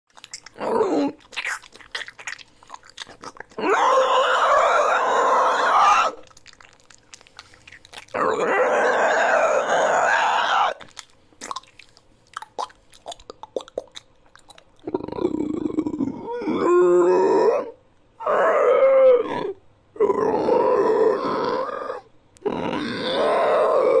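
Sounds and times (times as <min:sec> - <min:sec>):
rasping creature growl: 0:08.1 - 0:10.8, 0:19.2 - 0:24.0.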